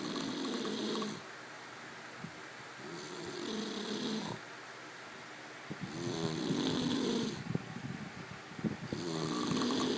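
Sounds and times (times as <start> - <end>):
person snoring: 8.9 - 9.9.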